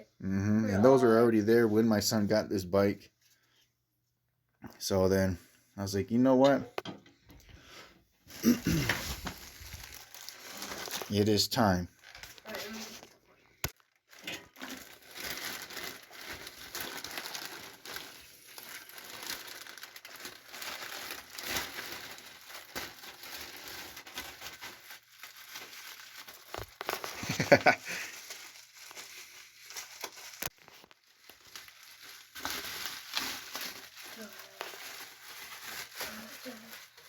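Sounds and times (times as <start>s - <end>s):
packaging crinkling and rustling: 8.4s - 37.0s
tape tearing: 12.0s - 37.0s.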